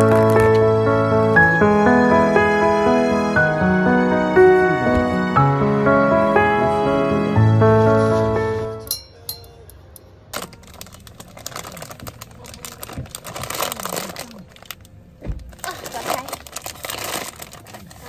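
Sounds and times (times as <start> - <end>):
crinkling and clicking handling: 10.4 - 18.0.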